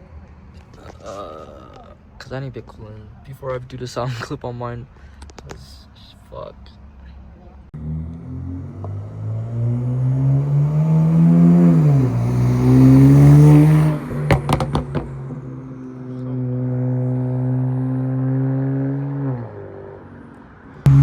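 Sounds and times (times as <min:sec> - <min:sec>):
car engine revving: 0:07.8 - 0:20.0, 0:20.8 - 0:21.0
exhaust pops: 0:14.0 - 0:15.5.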